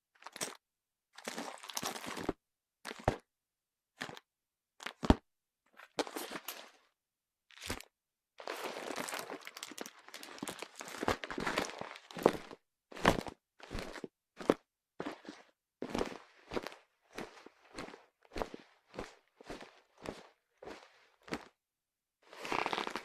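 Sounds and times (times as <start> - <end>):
handbag rustling: 8.5 - 12.5.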